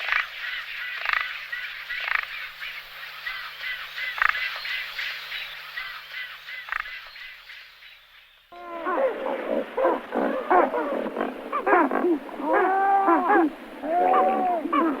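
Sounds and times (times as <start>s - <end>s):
pelicans squawking: 8.6s - 15.0s.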